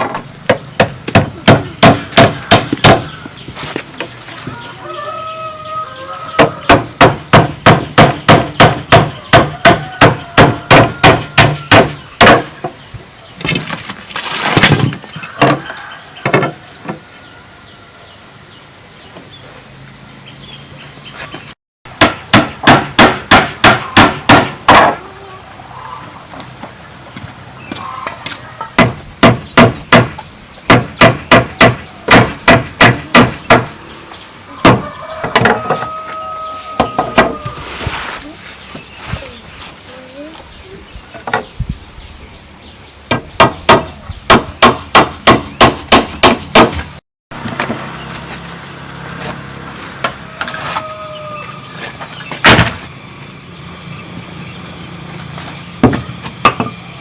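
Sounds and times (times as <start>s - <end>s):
hammer striking bamboo: 0.0s - 3.1s, 6.4s - 12.6s, 21.9s - 25.0s, 28.8s - 33.7s, 34.6s - 36.0s, 43.1s - 46.9s, 55.8s - 56.8s.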